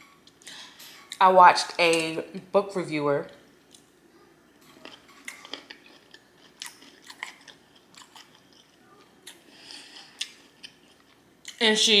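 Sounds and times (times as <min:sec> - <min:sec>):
person chewing food: 0:00.0 - 0:01.2, 0:04.6 - 0:11.6.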